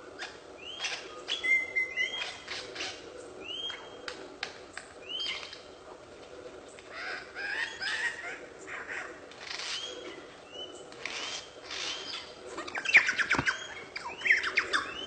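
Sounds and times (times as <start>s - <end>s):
bird calling: 0.0s - 15.0s.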